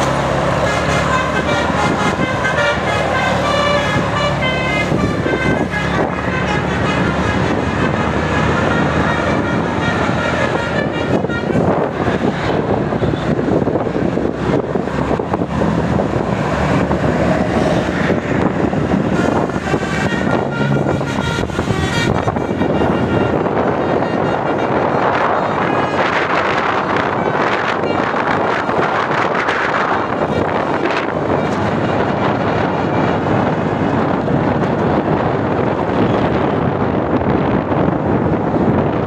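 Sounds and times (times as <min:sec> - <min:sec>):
bus engine: 0:00.0 - 0:39.0
rushing road and wind noise: 0:00.0 - 0:39.0
multi-tone musical air horn: 0:00.5 - 0:13.4, 0:16.6 - 0:33.1.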